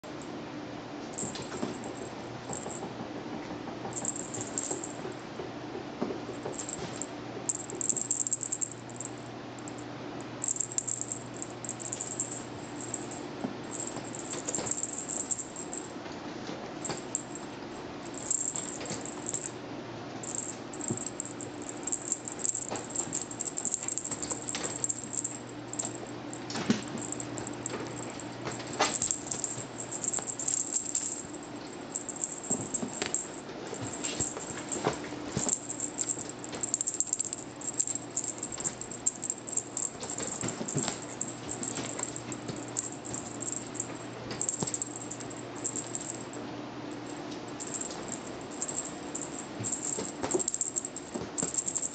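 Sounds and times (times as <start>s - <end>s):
steady low hum: 0.0s - 51.9s
kitten rattling and tapping: 1.2s - 16.0s, 16.7s - 19.6s, 20.2s - 46.4s, 47.0s - 51.9s.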